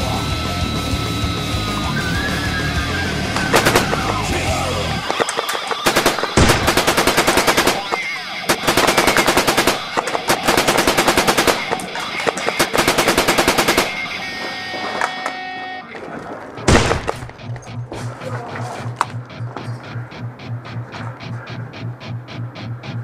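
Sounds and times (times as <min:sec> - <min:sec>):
airsoft gun firing full auto: 0:03.5 - 0:04.3, 0:05.0 - 0:14.1.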